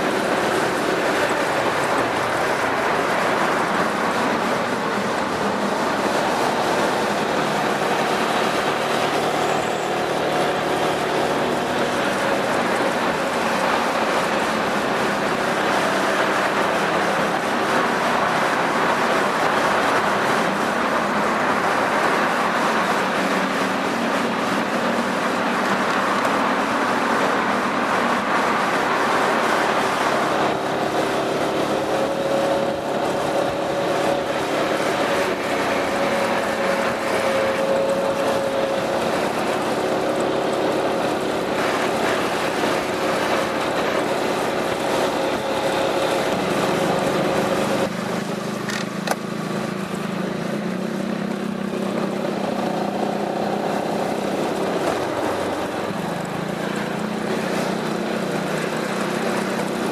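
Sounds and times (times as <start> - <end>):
scooter engine running: 23.0 - 59.9.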